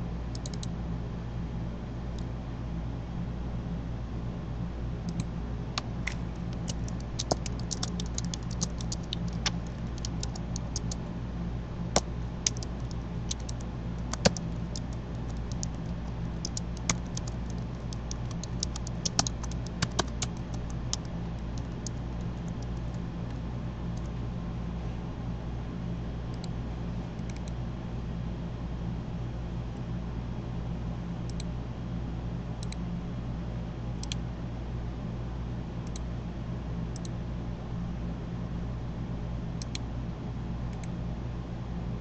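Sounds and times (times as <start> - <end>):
low electrical hum: 0.0 - 42.0
keyboard and mouse clicking: 0.3 - 0.7, 5.1 - 11.0, 11.9 - 23.0, 27.2 - 27.6, 34.0 - 34.2, 39.6 - 39.8.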